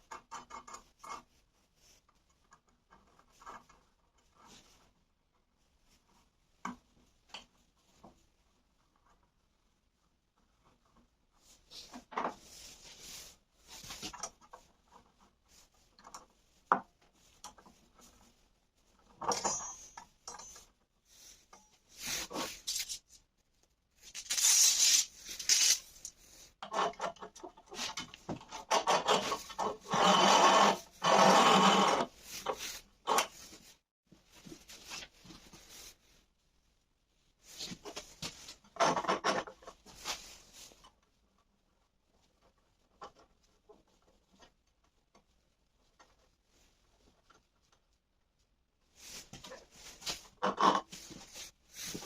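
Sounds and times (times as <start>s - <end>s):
rubbing and scraping on wood: 10.3s - 23.2s, 24.0s - 36.2s, 48.9s - 52.0s.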